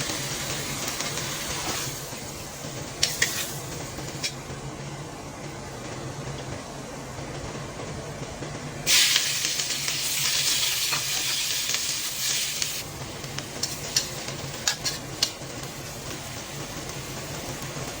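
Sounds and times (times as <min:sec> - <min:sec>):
food sizzling in a pan: 0:00.0 - 0:04.3, 0:08.9 - 0:17.6.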